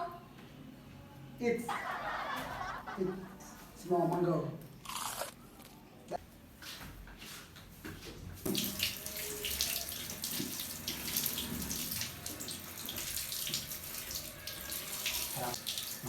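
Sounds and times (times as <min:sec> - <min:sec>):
water running from a tap: 0:08.4 - 0:16.0.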